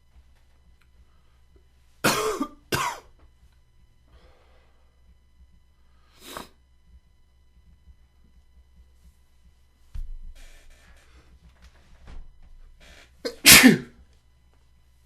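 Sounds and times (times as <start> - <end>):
man coughing: 2.0 - 3.1, 13.3 - 14.0
faint breath: 4.1 - 5.2, 12.8 - 13.2.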